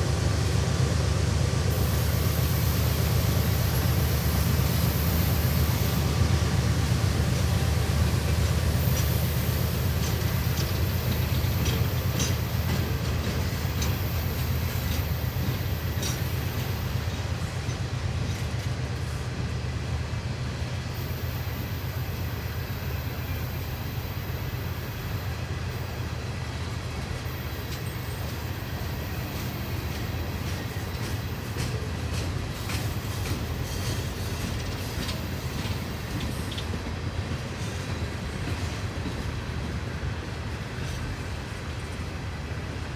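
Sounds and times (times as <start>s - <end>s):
train wheels rumbling on rail: 0.0s - 42.9s
wheels clicking over rail joints: 8.8s - 19.1s.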